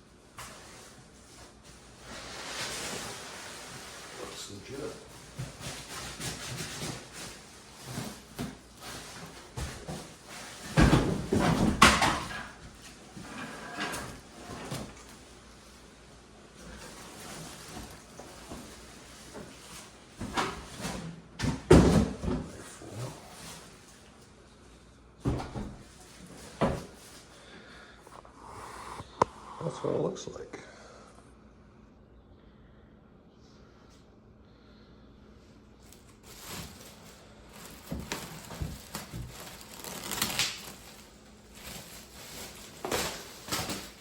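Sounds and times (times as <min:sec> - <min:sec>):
box bumps and knocks: 0:09.5 - 0:12.3.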